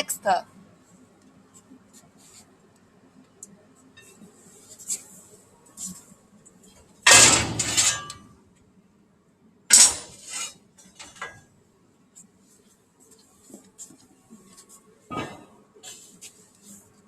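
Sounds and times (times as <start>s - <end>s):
metal pieces clattering and clanking: 7.1s - 8.2s, 9.7s - 11.4s.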